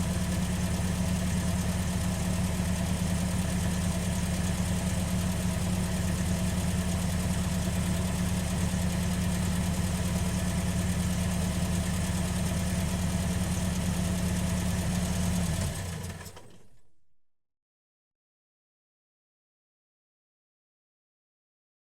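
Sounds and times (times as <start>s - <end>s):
car engine idling: 0.0s - 16.1s.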